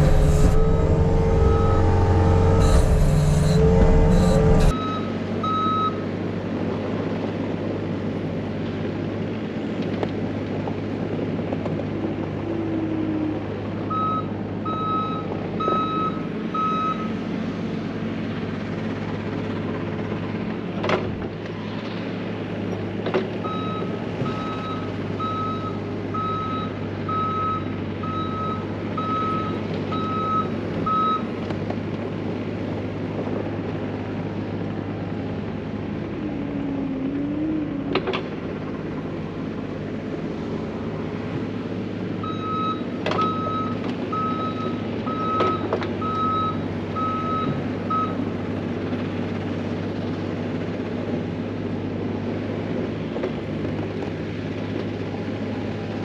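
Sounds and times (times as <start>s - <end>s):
backup alarm beeping: 0.0s - 5.9s
heavy diesel equipment running: 0.0s - 56.0s.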